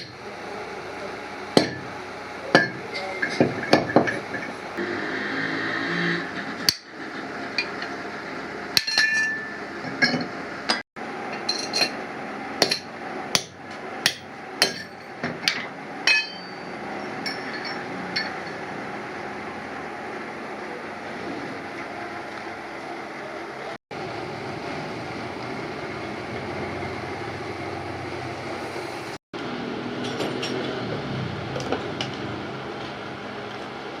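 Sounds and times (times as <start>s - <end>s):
hammer striking metal: 1.6s - 1.9s, 2.5s - 4.6s, 6.6s - 7.0s, 8.7s - 12.0s, 12.6s - 18.6s.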